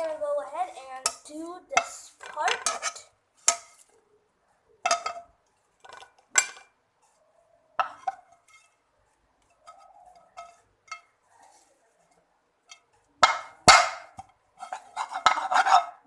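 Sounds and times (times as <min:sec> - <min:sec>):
utensil scraping a frying pan: 0:00.6 - 0:03.8, 0:07.8 - 0:08.8, 0:09.5 - 0:11.7, 0:12.7 - 0:16.0.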